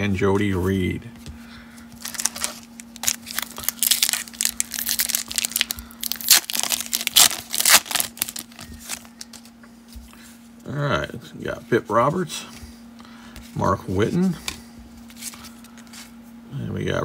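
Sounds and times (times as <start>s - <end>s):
foil wrapper tearing and crinkling: 2.0s - 9.5s.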